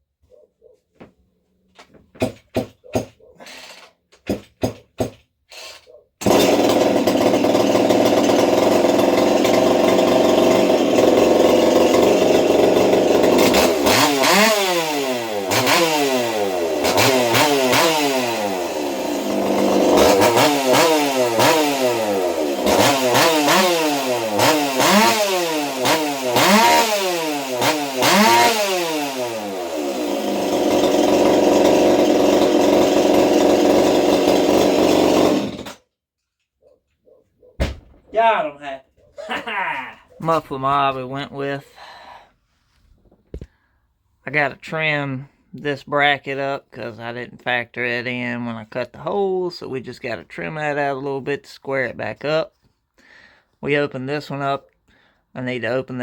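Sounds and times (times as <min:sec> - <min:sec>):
chainsaw pull-starting: 0:02.2 - 0:35.9
chainsaw engine revving: 0:05.5 - 0:35.8.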